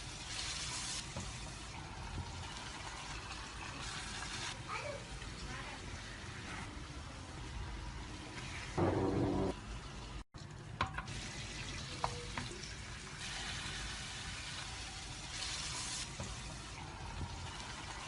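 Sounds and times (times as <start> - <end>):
food sizzling in a pan: 0.0 - 9.6, 11.1 - 18.0.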